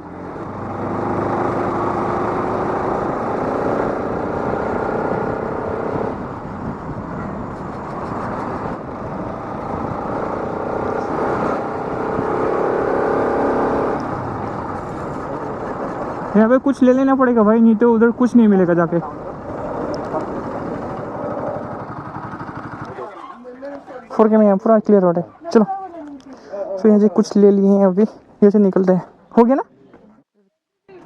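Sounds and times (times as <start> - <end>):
motorcycle engine revving: 0.0 - 23.1.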